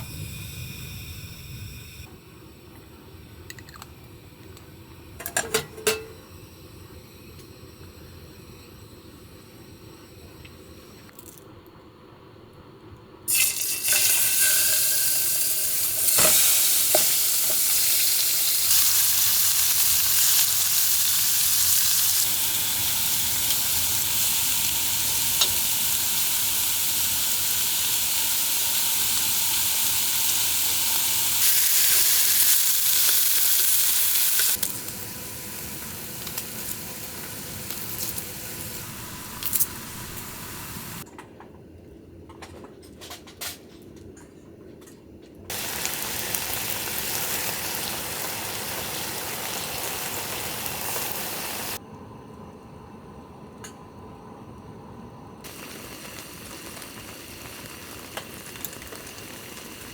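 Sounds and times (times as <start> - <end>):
food sizzling in a pan: 13.3 - 41.0, 45.5 - 51.8, 55.5 - 59.9.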